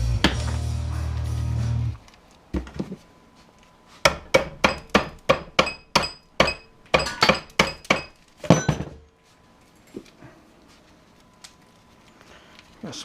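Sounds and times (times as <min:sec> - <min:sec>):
hammer striking metal: 0:04.1 - 0:09.0.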